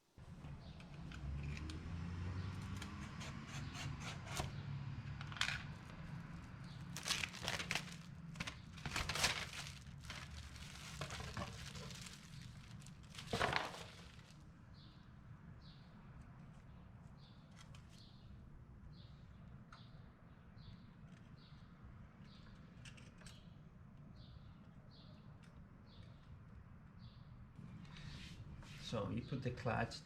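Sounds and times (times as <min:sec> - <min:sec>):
rustling: 0:05.8 - 0:14.4.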